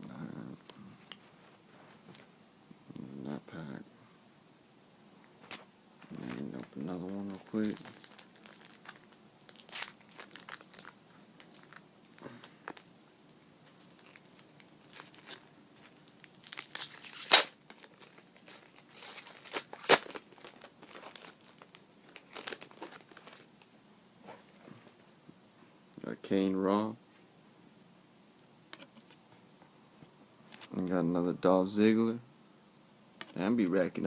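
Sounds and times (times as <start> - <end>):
wrapper crinkling: 6.0 - 12.9, 13.8 - 23.7
sharp wrapper rips: 6.2 - 12.8, 16.2 - 23.5.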